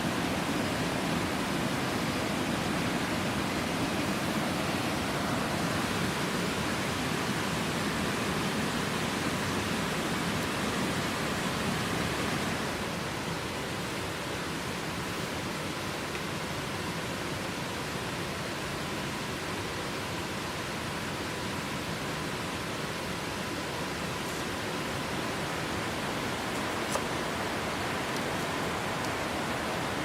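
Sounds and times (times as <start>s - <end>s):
heavy rain falling: 0.0s - 16.1s, 22.6s - 30.0s.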